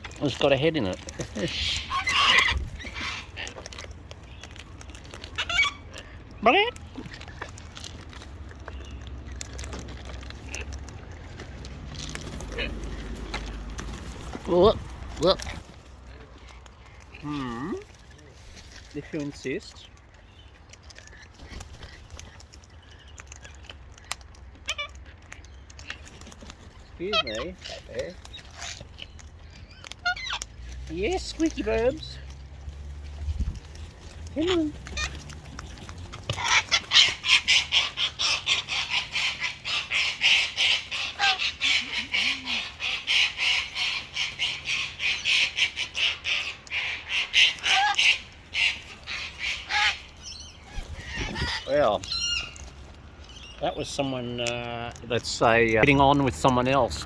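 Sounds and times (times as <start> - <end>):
parrots squawking harshly: 1.1 - 4.4, 5.2 - 7.4, 9.6 - 17.9, 21.0 - 26.1, 26.8 - 31.9, 34.0 - 53.5
squeaky bird call: 1.4 - 3.5, 5.4 - 5.9, 29.4 - 30.6, 36.4 - 52.6.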